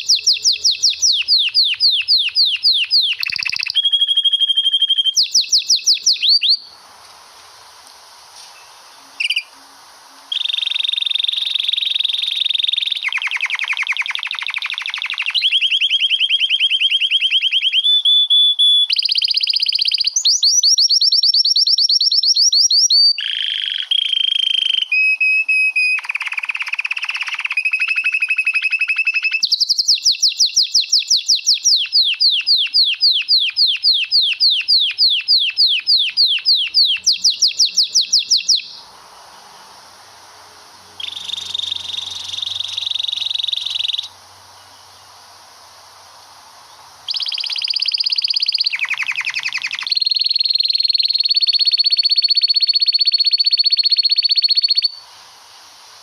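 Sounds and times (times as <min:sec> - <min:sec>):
canary singing trills: 0:00.0 - 0:06.8, 0:08.5 - 0:39.8, 0:40.9 - 0:45.1, 0:46.7 - 0:55.0.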